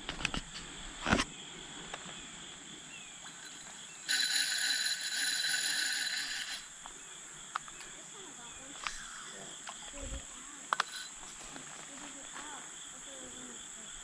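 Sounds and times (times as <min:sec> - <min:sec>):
high insect drone: 0:00.0 - 0:14.0
loud hissing buzz: 0:03.4 - 0:06.9, 0:08.8 - 0:09.7.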